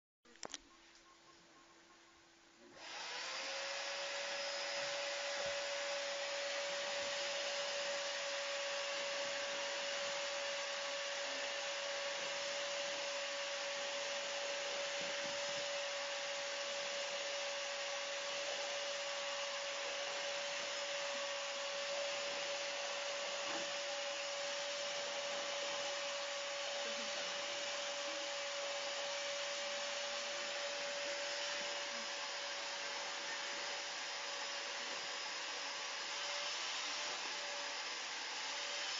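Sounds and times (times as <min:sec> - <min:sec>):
vacuum cleaner running: 0:02.6 - 0:38.9.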